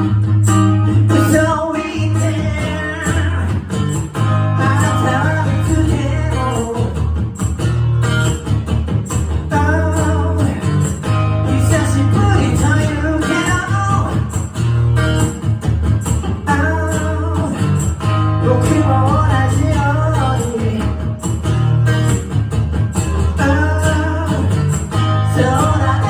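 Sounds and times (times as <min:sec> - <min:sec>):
bass line: 0:00.0 - 0:26.0
strummed guitar: 0:00.0 - 0:26.0
person singing: 0:00.9 - 0:03.7, 0:04.4 - 0:07.1, 0:09.5 - 0:14.3, 0:18.4 - 0:21.2, 0:23.2 - 0:26.0.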